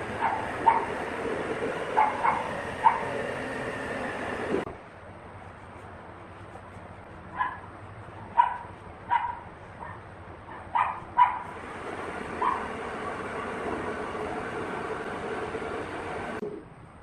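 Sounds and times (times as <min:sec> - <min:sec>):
dog barking: 0:00.2 - 0:01.0, 0:02.0 - 0:03.1, 0:07.4 - 0:07.6, 0:08.3 - 0:11.5, 0:12.4 - 0:12.7.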